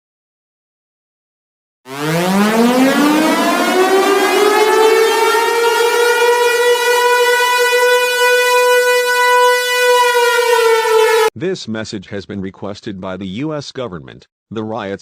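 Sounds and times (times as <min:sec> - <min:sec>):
civil defense siren: 0:01.9 - 0:11.3.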